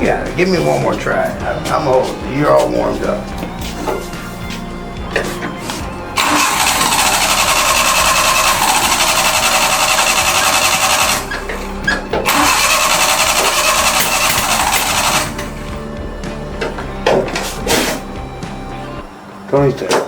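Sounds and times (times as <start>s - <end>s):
engine starter cranking: 6.2s - 15.6s.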